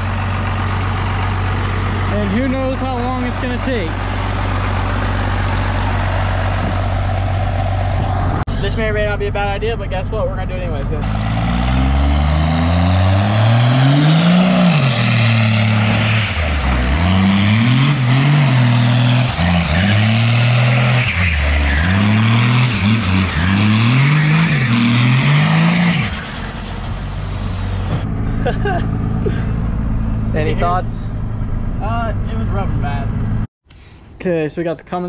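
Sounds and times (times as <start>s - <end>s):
diesel truck engine revving: 0.0s - 33.5s.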